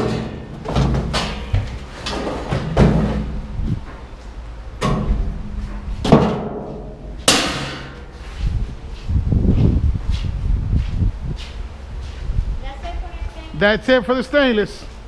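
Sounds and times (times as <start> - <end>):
metal scrap clanging: 0.0 - 3.3, 4.8 - 8.2.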